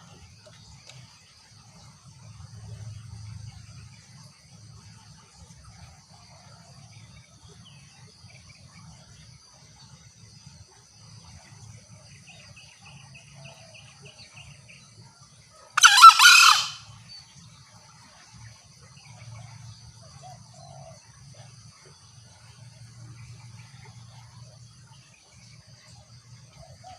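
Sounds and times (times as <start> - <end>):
insect trilling: 15.8 - 16.9
junglefowl call: 15.8 - 17.0.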